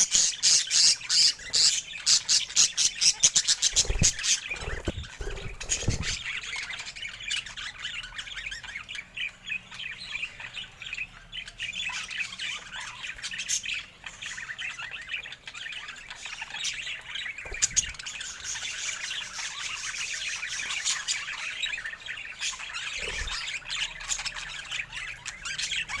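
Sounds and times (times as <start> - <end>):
budgerigars chattering: 0.0 - 8.8, 17.0 - 26.0.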